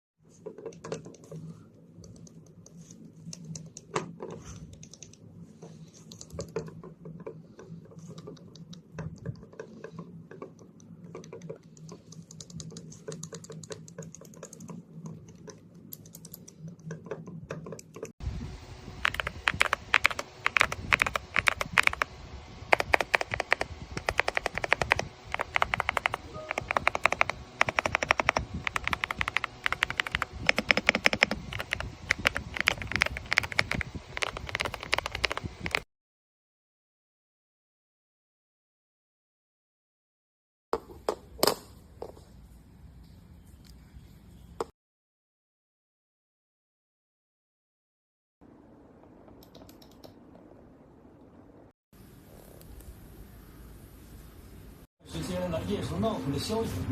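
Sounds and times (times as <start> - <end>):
low steady hum: 0.2 - 35.8
keyboard switches clicking: 22.7 - 35.4.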